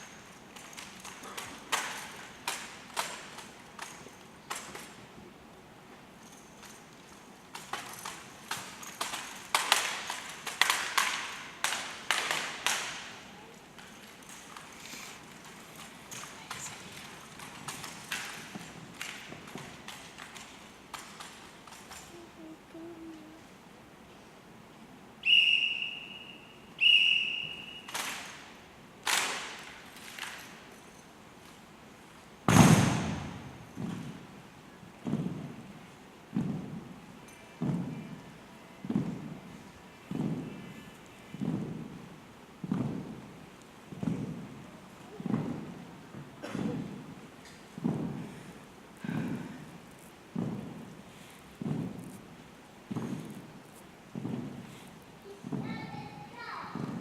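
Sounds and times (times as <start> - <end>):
rifles slapping and knocking: 0.0 - 5.1, 6.2 - 22.4, 27.9 - 31.0
whistle blasts: 25.2 - 28.0
heavy deep thud: 32.5 - 33.4.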